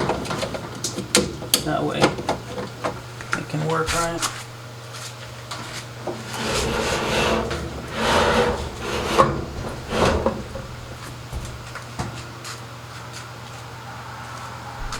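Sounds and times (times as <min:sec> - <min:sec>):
steady low hum: 0:00.0 - 0:12.5
rubbing and scraping of machine parts: 0:02.2 - 0:04.6, 0:05.5 - 0:12.6.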